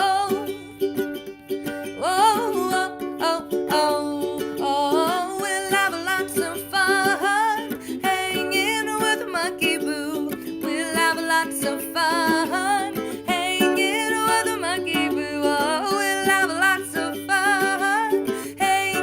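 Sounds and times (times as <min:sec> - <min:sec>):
ukulele music: 0:00.0 - 0:19.0.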